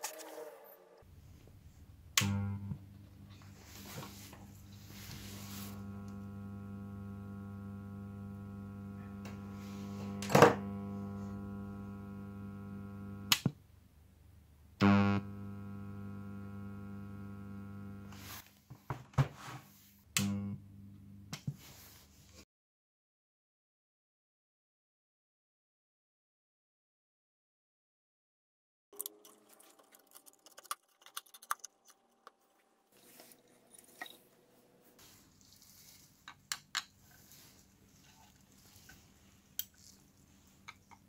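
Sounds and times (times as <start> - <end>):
speaker amplifier buzzing hum: 1.9 - 13.6, 14.8 - 18.4, 20.1 - 21.6.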